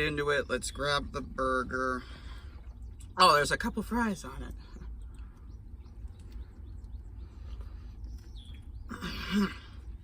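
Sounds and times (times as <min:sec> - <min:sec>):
steady low hum: 0:00.0 - 0:10.0
man chewing quietly: 0:04.5 - 0:10.0.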